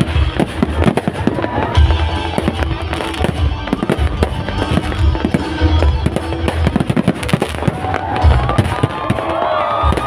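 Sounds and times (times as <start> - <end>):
firework bangs and crackles: 0.0 - 10.0
music playing: 0.0 - 10.0.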